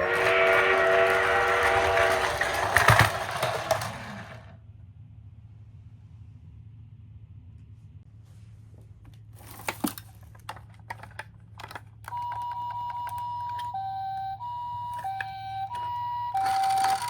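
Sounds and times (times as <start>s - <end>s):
plastic clicks and knocks: 9.9s - 13.8s
toy electronic two-tone siren: 12.1s - 17.0s.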